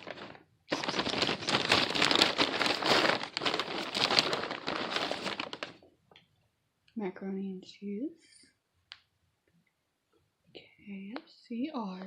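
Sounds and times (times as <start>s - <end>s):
food wrapping crinkling: 0.0s - 5.9s.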